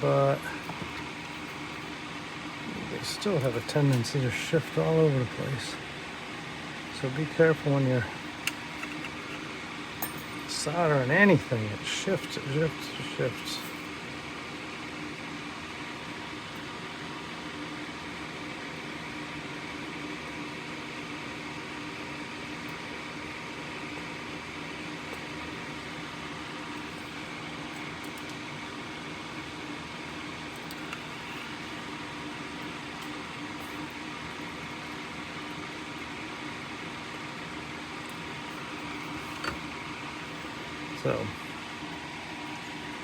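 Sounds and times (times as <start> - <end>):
machine hum: 0.0 - 43.0.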